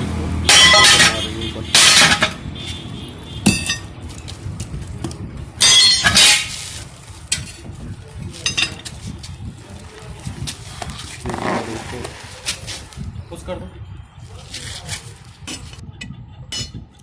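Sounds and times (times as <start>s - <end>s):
tools clanking on steel wheel: 0.5s - 2.4s, 3.4s - 4.3s, 5.0s - 7.7s, 8.3s - 9.0s.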